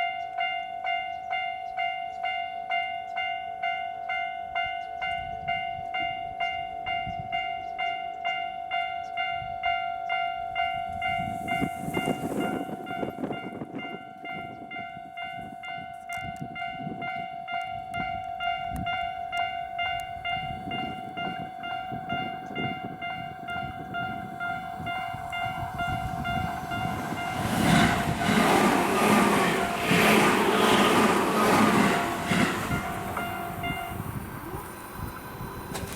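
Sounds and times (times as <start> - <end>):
level crossing bell alarm: 0.0 - 35.9
train passing loudly: 9.6 - 15.8, 16.5 - 35.9
rushing wind noise: 10.6 - 15.6, 19.9 - 35.9.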